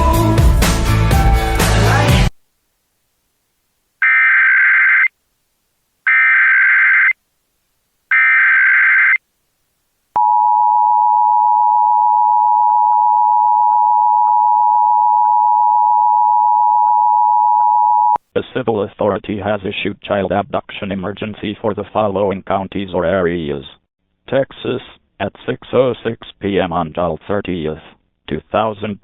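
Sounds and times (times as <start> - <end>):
warbling digital data squawk: 4.0 - 5.1, 6.1 - 7.2, 8.1 - 9.2.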